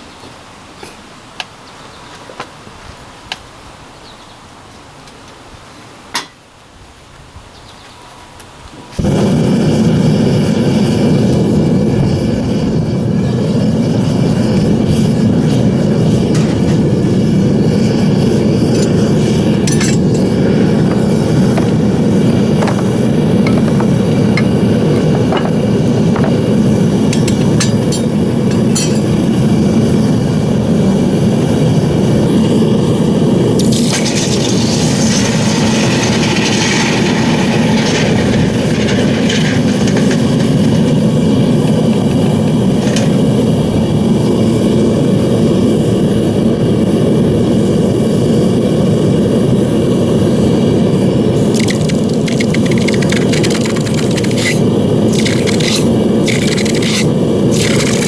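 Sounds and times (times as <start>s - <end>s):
furnace burner and blower rushing: 8.8s - 58.0s
crackly scraping clicks: 35.1s - 41.2s, 51.4s - 58.0s.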